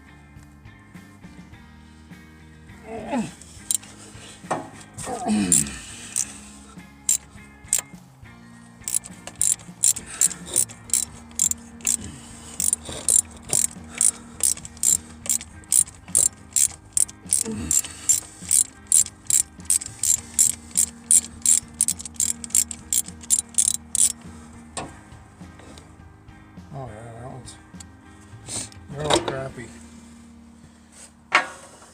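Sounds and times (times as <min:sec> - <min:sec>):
ratchet wrench clicking: 0:03.5 - 0:03.9, 0:05.5 - 0:06.3, 0:07.1 - 0:07.9, 0:08.8 - 0:24.2.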